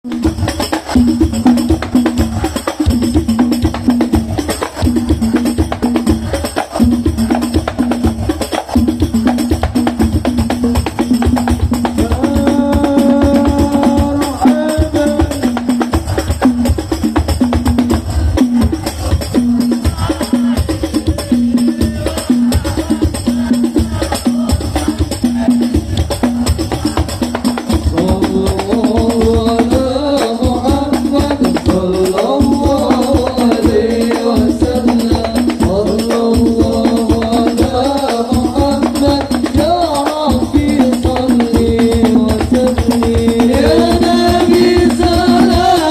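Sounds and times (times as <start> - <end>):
frame drums beating: 0.0 - 45.9
jingling tambourines: 0.1 - 45.9
person singing: 12.0 - 15.8, 19.6 - 26.1, 26.7 - 45.9.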